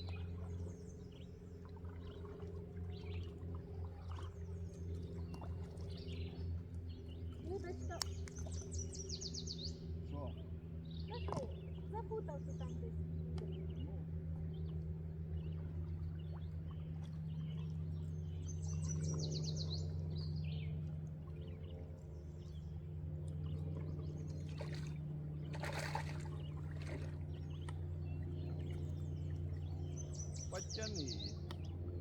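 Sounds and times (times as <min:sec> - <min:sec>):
steady low hum: 0:00.0 - 0:32.0
bird chirping: 0:29.8 - 0:31.6.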